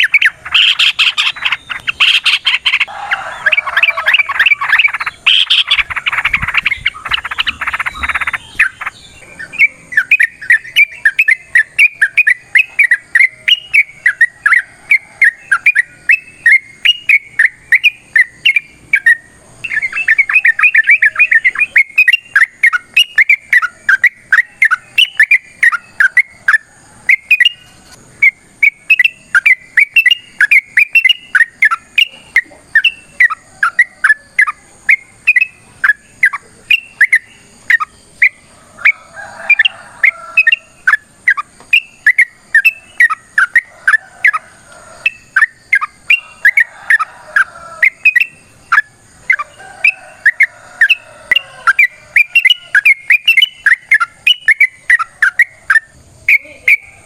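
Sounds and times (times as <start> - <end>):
bird chattering softly: 0.0 - 27.6
bird singing rapid bright notes: 0.0 - 44.4, 45.0 - 57.0.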